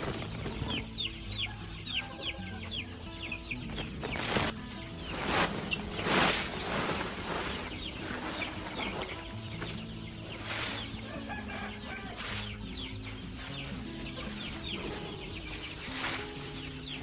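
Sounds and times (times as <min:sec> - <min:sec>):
chickens clucking: 0:00.0 - 0:17.0
loud rustling: 0:03.7 - 0:11.0.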